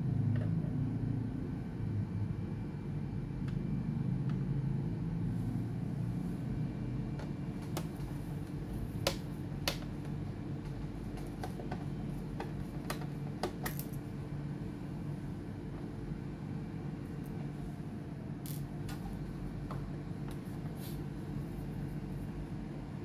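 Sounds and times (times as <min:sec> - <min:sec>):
steady low hum: 0:00.0 - 0:23.0
tools tapping on plastic case: 0:07.2 - 0:14.0.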